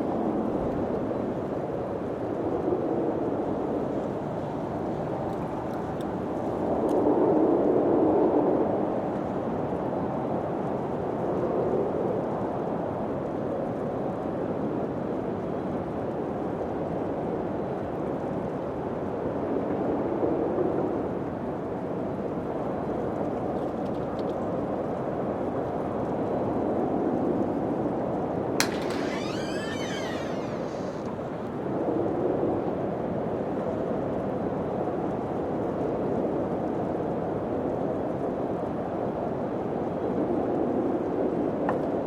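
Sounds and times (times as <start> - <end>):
high squeaking chirps: 28.6 - 31.5
sharp click: 28.6 - 31.5.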